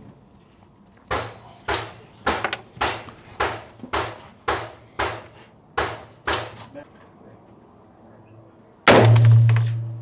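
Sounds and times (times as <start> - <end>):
rifle shots echoing: 8.9 - 10.0.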